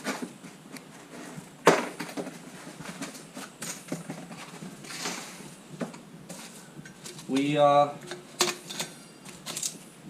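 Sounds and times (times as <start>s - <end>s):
packaging rustling and knocking: 0.0s - 7.3s.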